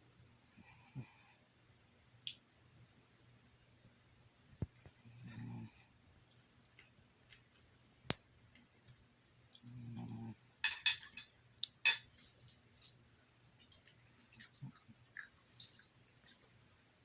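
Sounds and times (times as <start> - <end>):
cat snoring: 0.5 - 1.4, 5.0 - 5.9, 9.7 - 10.6.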